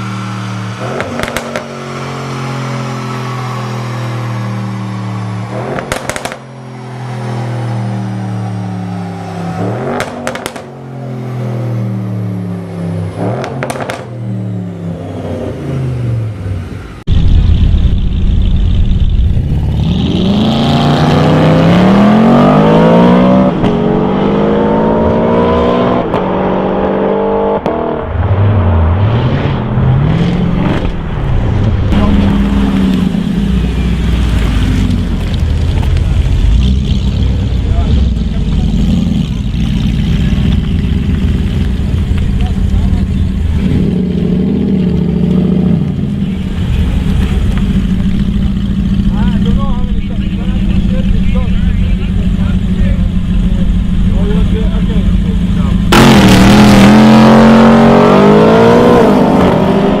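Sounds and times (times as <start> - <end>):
car engine revving: 0.0 - 60.0
exhaust crackles: 30.3 - 60.0.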